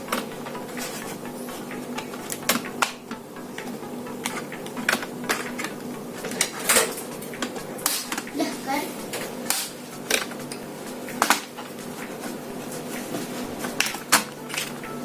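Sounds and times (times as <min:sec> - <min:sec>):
plastic clips clicking: 0:02.0 - 0:08.3, 0:09.2 - 0:10.6.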